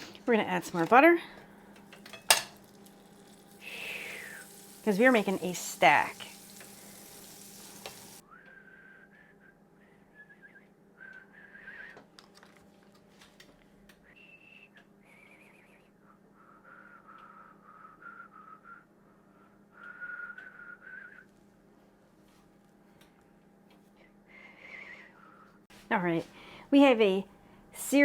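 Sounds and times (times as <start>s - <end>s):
person whistling: 8.2s - 12.0s, 14.2s - 15.9s, 16.5s - 18.9s, 19.7s - 21.3s.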